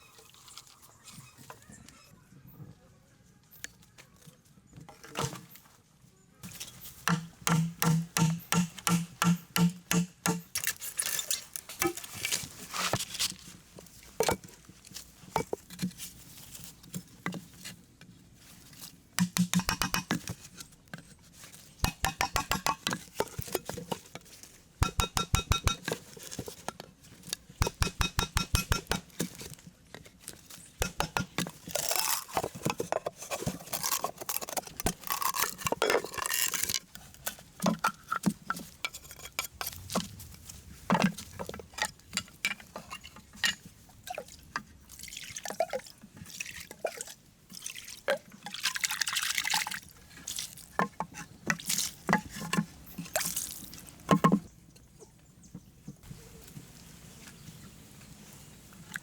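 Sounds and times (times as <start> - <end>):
hand tool strikes: 7.1 - 10.6, 19.2 - 20.3, 21.8 - 23.4, 24.8 - 26.0, 27.6 - 29.1, 30.8 - 31.5.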